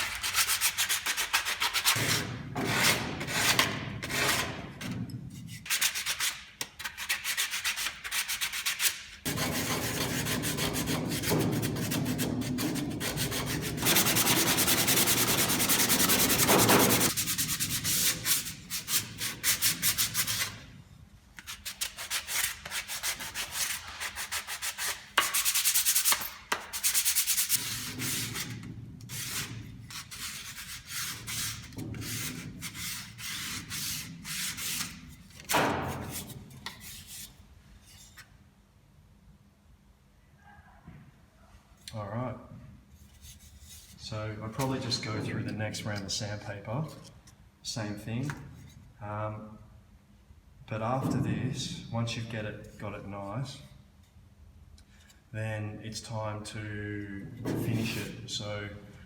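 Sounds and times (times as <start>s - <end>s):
sandpaper rubbing on wood: 5.6s - 20.6s, 21.5s - 35.0s.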